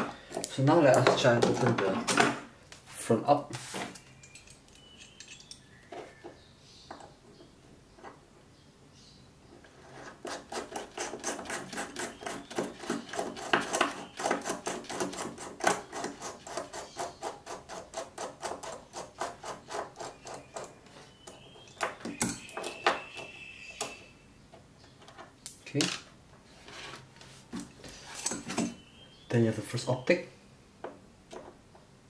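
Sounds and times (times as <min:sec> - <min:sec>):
high squeak: 0:20.0 - 0:24.3.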